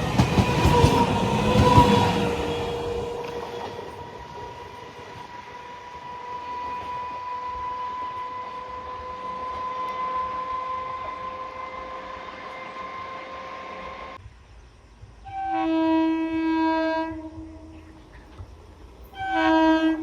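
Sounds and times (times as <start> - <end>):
train running by: 0.0 - 14.3.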